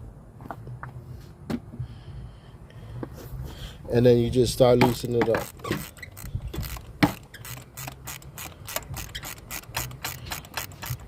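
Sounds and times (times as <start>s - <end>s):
socket wrench ratchet clicking: 4.9s - 11.0s.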